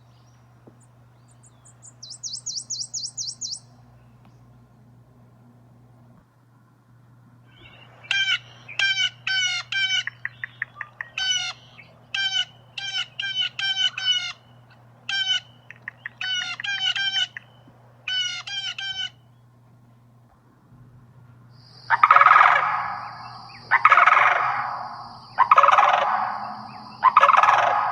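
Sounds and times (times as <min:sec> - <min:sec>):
bird harsh calls: 0:01.3 - 0:03.6, 0:07.5 - 0:19.4, 0:21.6 - 0:27.9
rapid rattle of ticks: 0:15.6 - 0:17.5.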